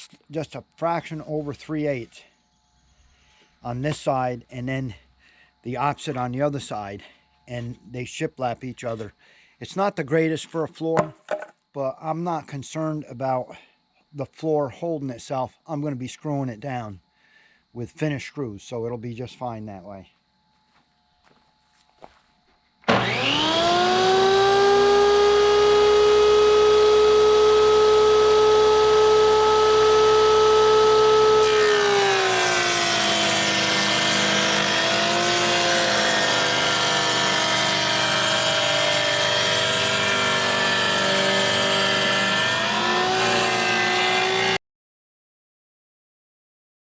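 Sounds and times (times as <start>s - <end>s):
power tool motor whining: 22.8s - 44.6s.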